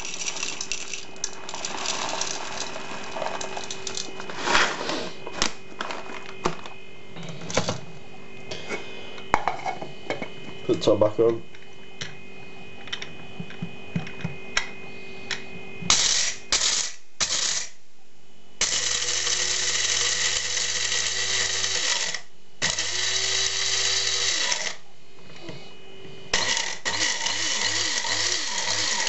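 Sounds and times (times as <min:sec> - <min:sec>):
blade grinder grinding coffee beans: 0:00.0 - 0:07.8, 0:15.9 - 0:17.8, 0:18.6 - 0:24.8, 0:26.3 - 0:29.0.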